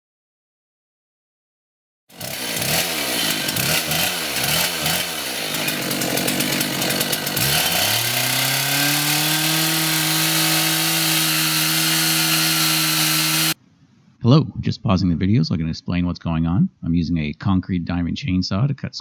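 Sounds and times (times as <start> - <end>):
concrete chainsaw revving: 2.1 - 13.6.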